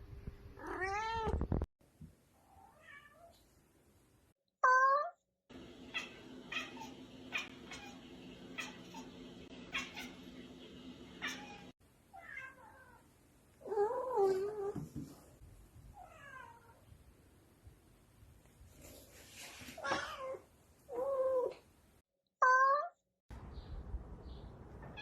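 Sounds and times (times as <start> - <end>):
cat meowing: 0.6 - 1.4, 11.2 - 13.0
steady low hum: 5.5 - 11.7.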